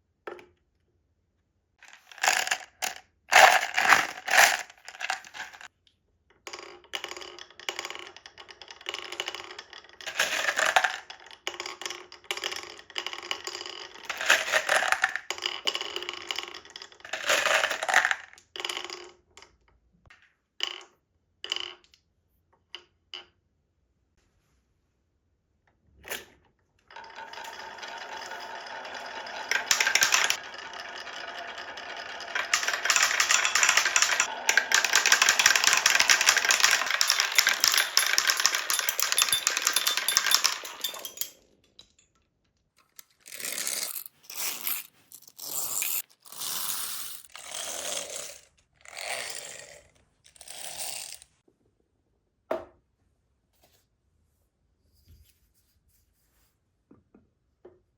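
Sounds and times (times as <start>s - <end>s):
marbles rattling down wooden track: 1.8s - 5.7s, 6.5s - 19.2s, 26.9s - 41.4s, 45.4s - 51.3s.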